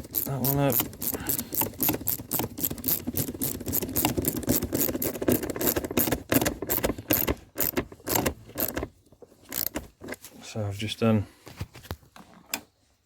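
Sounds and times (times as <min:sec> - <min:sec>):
ratchet clicking: 0:00.0 - 0:08.9, 0:09.5 - 0:09.8.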